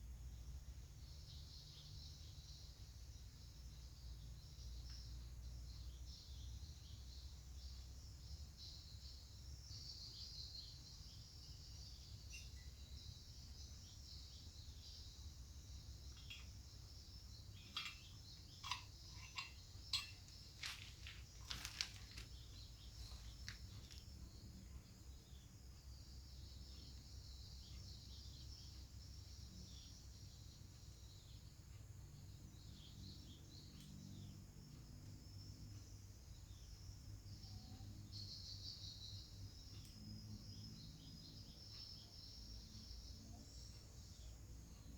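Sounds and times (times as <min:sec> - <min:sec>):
insects and birds chirping: 0:00.0 - 0:44.9.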